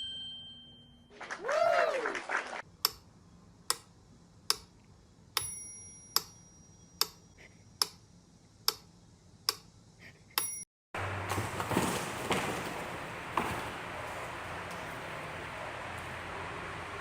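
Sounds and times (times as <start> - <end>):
sharp ticks: 4.5 - 4.7.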